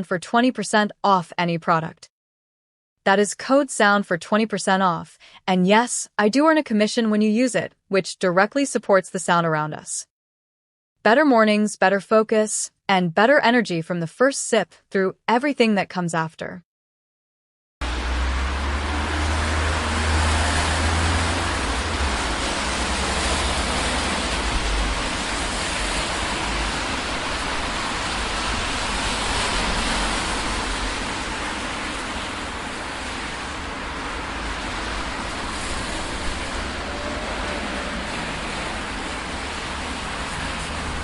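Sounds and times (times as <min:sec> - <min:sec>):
traffic noise: 0:17.8 - 0:41.0
vehicle passing close: 0:17.8 - 0:41.0.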